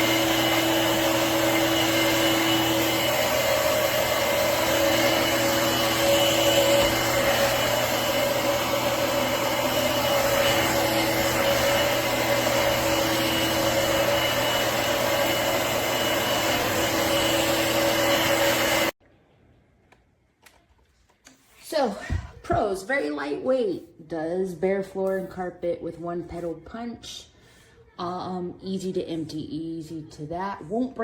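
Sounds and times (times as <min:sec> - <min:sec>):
cordless vacuum running: 0:00.0 - 0:19.0.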